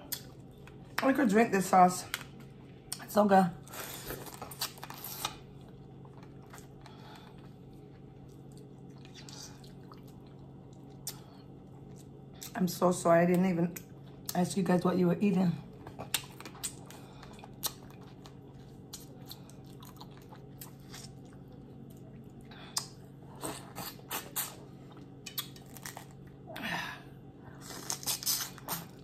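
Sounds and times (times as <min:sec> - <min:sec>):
person chewing: 0:03.9 - 0:12.5, 0:15.7 - 0:26.6.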